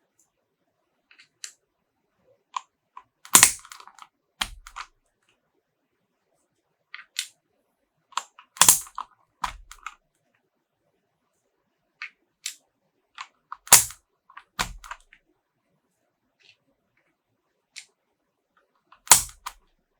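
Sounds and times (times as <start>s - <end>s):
mechanical keyboard typing: 3.3s - 4.9s, 8.2s - 10.0s, 13.6s - 14.0s, 14.6s - 15.1s, 19.0s - 19.6s.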